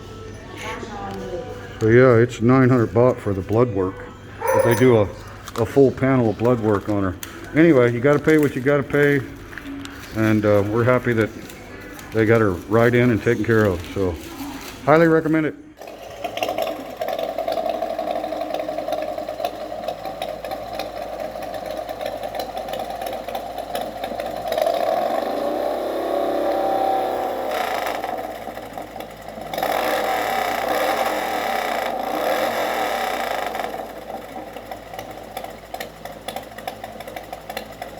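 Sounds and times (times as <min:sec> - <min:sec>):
vehicle engine running: 0:17.0 - 0:37.9.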